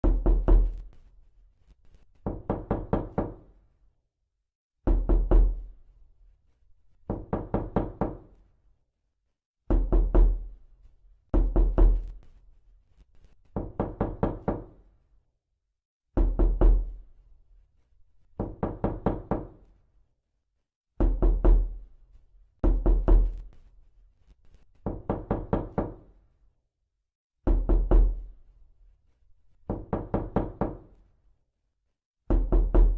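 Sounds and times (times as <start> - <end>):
knuckles knocking on a door: 0.0 - 0.8, 2.2 - 3.5, 4.8 - 5.7, 7.1 - 8.3, 9.7 - 10.5, 11.4 - 12.1, 13.6 - 14.8, 16.2 - 17.0, 18.4 - 19.6, 21.0 - 21.8, 22.6 - 23.4, 24.8 - 26.1, 27.4 - 28.2, 29.7 - 30.9, 32.3 - 32.9.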